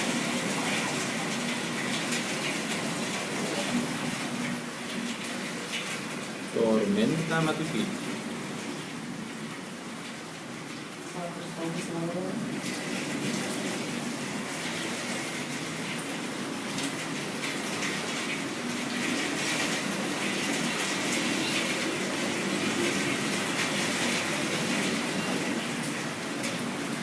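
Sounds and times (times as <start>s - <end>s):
floodwater rushing and splashing: 0.0s - 27.0s
heavy rain pouring: 0.0s - 27.0s.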